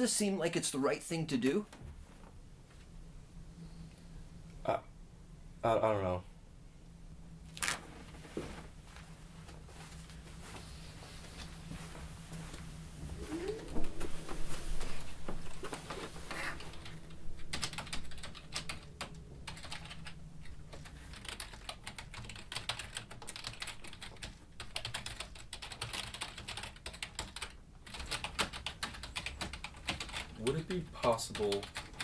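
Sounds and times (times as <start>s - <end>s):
typing on a keyboard: 17.5s - 30.3s, 31.1s - 32.0s.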